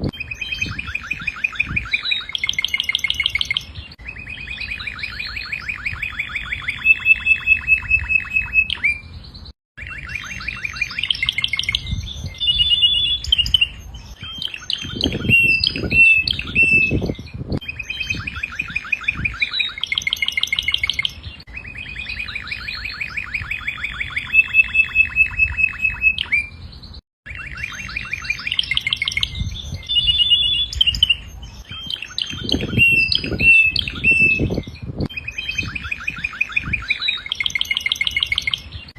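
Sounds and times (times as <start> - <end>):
canary singing: 0.0 - 38.9.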